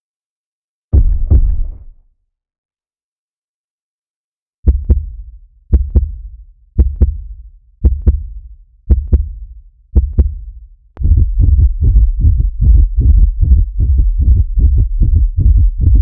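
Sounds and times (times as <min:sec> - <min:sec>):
heartbeat double thumps: 0:01.0 - 0:01.9, 0:04.7 - 0:16.0.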